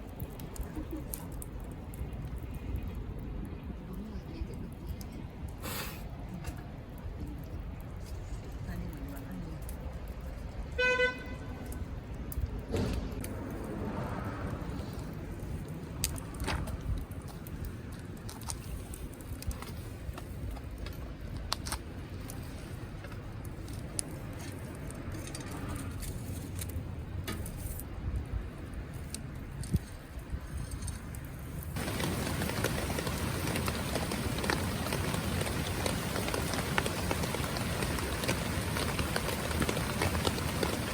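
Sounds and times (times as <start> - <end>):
campfire crackling and popping: 0.0 - 10.8, 11.5 - 25.6, 31.1 - 40.9
loud even hiss: 5.6 - 6.1.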